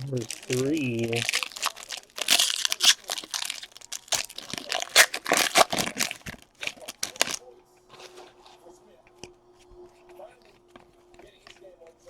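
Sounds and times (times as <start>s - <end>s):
wrapper tearing and crinkling: 0.0s - 8.3s.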